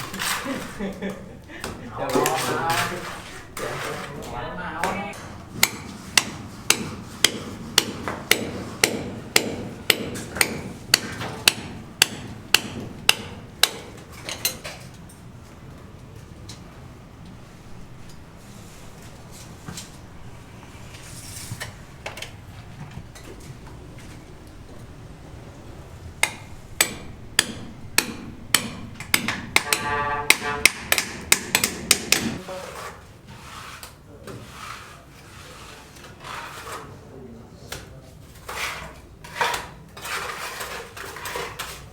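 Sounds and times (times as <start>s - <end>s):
hammer blows: 26.2s - 32.4s.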